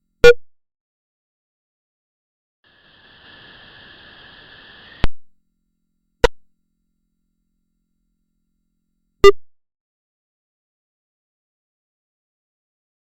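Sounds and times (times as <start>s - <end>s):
faint hiss with high tone: 2.7s - 5.1s.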